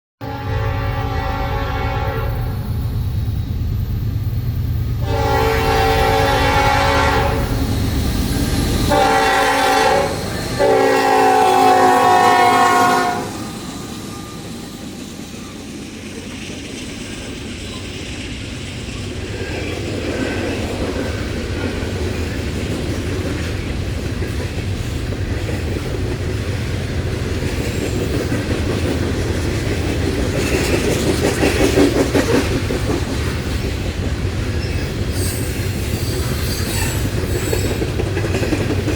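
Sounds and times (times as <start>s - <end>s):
locomotive air horn blasts: 0.2s - 2.6s, 5.0s - 7.6s, 8.9s - 13.8s
train rumbling: 0.2s - 38.9s
wheel and rail noise: 0.8s - 38.9s.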